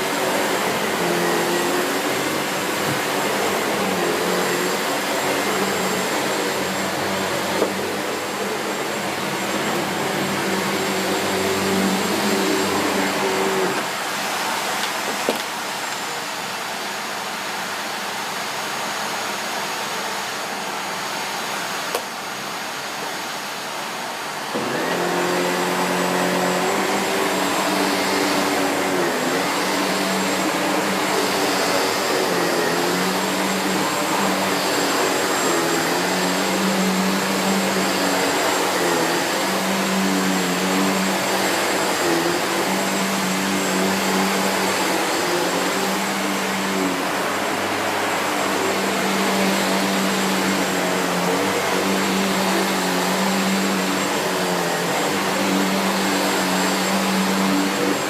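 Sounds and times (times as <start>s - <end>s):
upright vacuum cleaner running: 0.0s - 58.0s
vacuum cleaner click: 5.3s - 8.4s, 14.8s - 16.0s, 21.9s - 22.1s.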